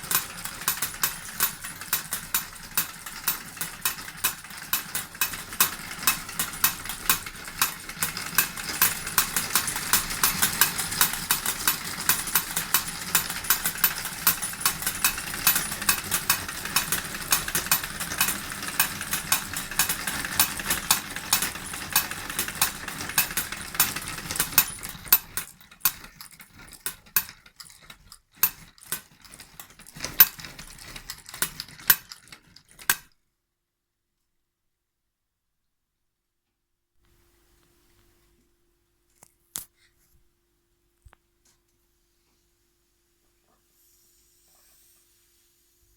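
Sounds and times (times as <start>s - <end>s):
forging hammers clattering: 0.1s - 33.0s.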